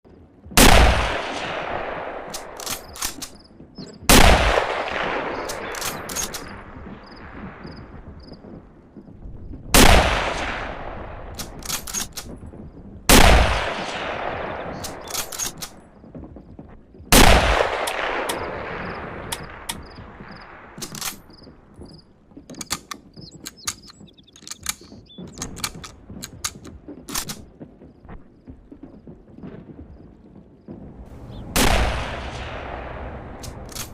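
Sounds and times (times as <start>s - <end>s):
rifle shots with rolling echo: 0.6s - 16.0s, 17.1s - 23.9s, 30.8s - 33.9s
rifle bolt clicking: 2.3s - 3.4s, 5.4s - 6.5s, 11.4s - 12.3s, 14.8s - 15.8s, 20.8s - 21.2s, 22.5s - 27.4s, 33.4s - 33.9s
loose clicks and rattles: 5.4s - 6.5s, 11.4s - 12.4s, 20.8s - 21.2s, 22.5s - 27.5s, 33.4s - 33.9s.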